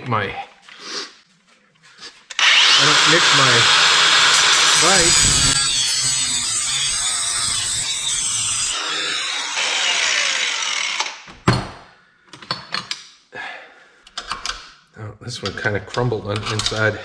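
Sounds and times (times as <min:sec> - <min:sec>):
power drill boring into metal: 0:02.3 - 0:11.3
metal parts clicking and knocking: 0:15.5 - 0:16.9.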